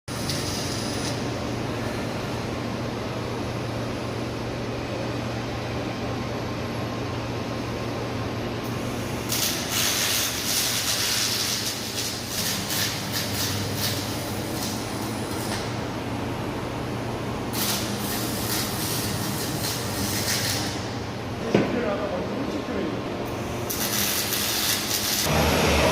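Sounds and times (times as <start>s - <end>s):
welding arc hissing crackle: 0.1s - 2.0s, 8.6s - 15.9s, 17.4s - 21.2s, 23.3s - 25.5s
low machinery hum: 0.1s - 25.9s.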